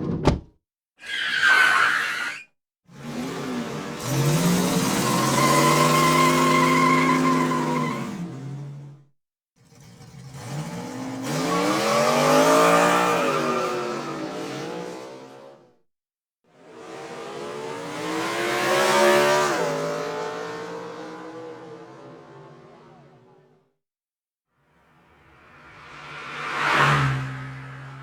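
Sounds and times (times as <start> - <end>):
car passing by: 24.9 - 28.0.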